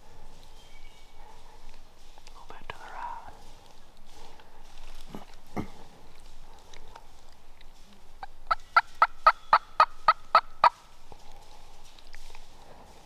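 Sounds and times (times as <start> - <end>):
turkey yelping: 8.2 - 10.8.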